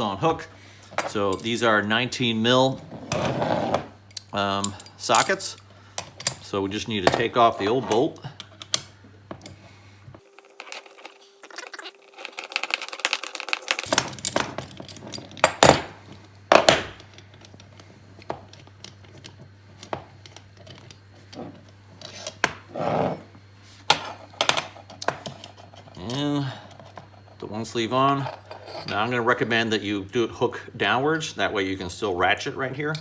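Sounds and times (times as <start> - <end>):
metal parts clinking: 0.8 - 1.8, 4.1 - 8.8, 10.3 - 22.5.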